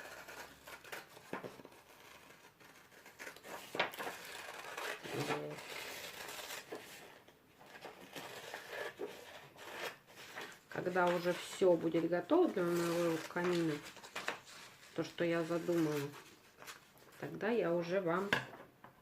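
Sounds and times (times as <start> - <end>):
paper crinkling and rustling: 0.0 - 17.3.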